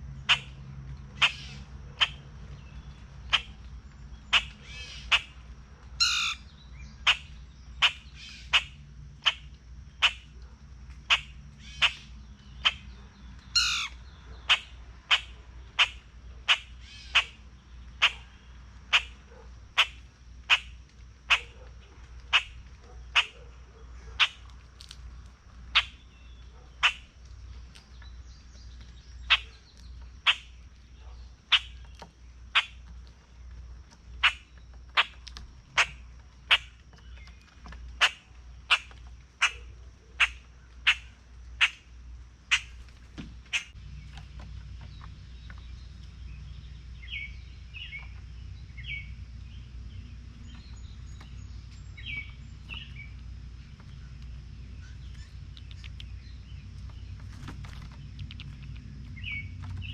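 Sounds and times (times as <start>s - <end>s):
harsh chipmunk calls: 0.2s - 2.3s, 3.2s - 3.6s, 4.2s - 5.4s, 6.0s - 10.4s, 11.1s - 24.9s, 25.7s - 27.2s, 29.2s - 33.0s, 34.1s - 37.3s, 37.9s - 43.8s, 50.4s - 56.9s, 58.0s - 59.9s
chipmunk chipping: 48.8s - 57.0s, 58.0s - 59.9s.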